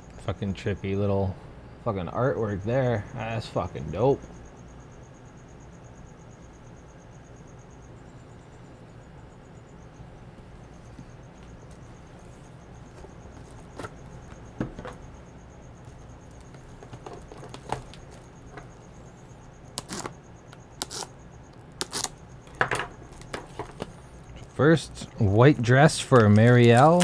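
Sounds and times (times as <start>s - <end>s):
low steady hum: 0.0s - 27.0s
disc cases clicking and rustling: 10.9s - 15.2s, 15.8s - 19.2s, 19.8s - 24.6s, 25.5s - 27.0s.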